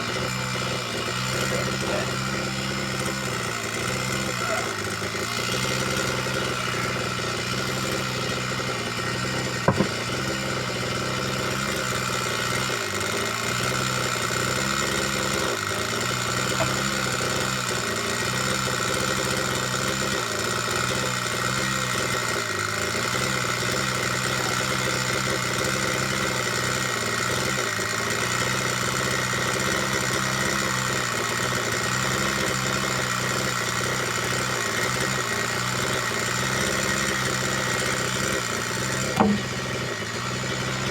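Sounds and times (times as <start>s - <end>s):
small petrol engine running: 0.0s - 40.9s.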